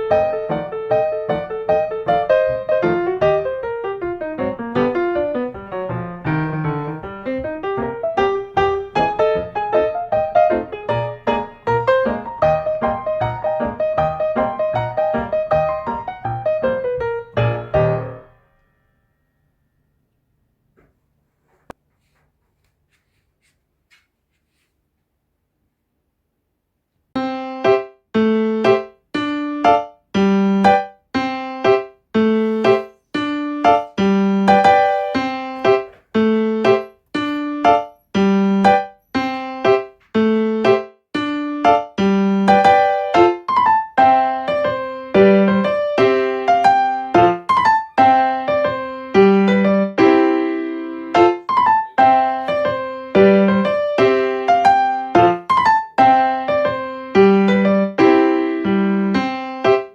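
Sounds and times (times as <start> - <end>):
bouncy piano tune: 0.0 - 19.0, 27.2 - 59.9.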